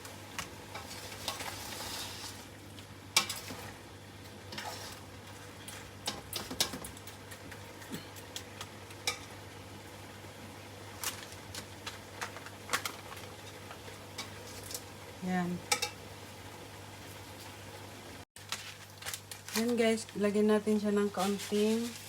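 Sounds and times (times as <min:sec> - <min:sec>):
shrimp sizzling in a pan: 0:00.0 - 0:10.1, 0:10.8 - 0:17.7.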